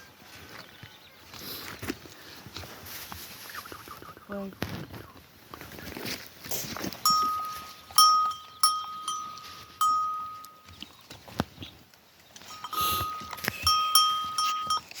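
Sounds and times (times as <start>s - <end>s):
metallic bell-like ringing strikes: 7.1s - 10.7s, 12.5s - 15.0s.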